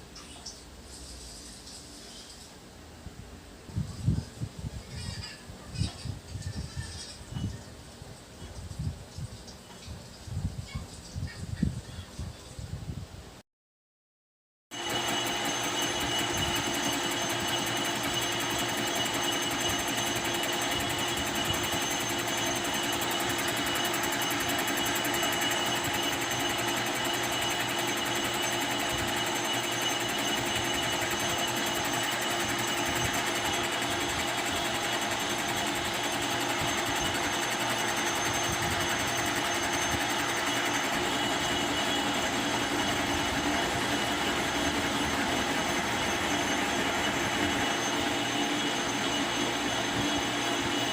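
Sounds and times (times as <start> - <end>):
metal lathe running: 14.7 - 50.9.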